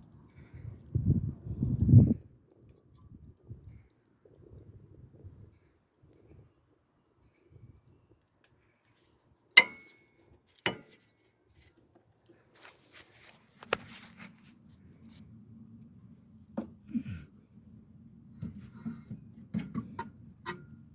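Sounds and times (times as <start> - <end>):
steady low hum: 13.6 - 20.9.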